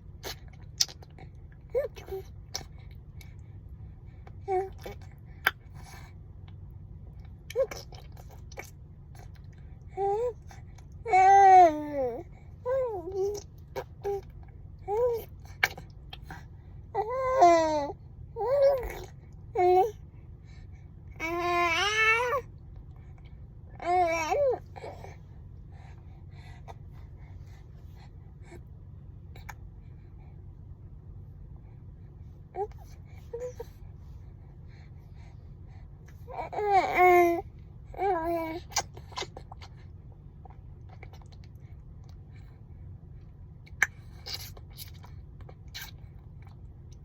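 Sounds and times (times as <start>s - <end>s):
low steady rumble: 0.0s - 47.0s
baby mouth sounds and breaths: 0.1s - 17.5s, 18.4s - 30.8s, 31.4s - 47.0s
baby mouth clicks and smacks: 0.2s - 1.1s.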